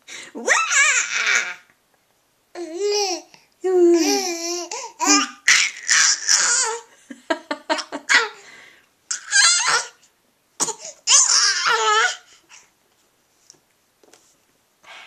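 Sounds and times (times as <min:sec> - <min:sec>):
child squealing and babbling: 0:00.4 - 0:01.6, 0:04.1 - 0:06.8, 0:09.1 - 0:10.0, 0:11.1 - 0:12.2
child laughing: 0:07.5 - 0:08.4.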